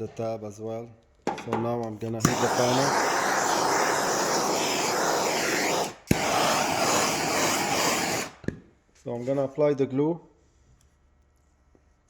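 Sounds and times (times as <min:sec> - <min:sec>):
heat gun blowing air: 0:02.2 - 0:08.4.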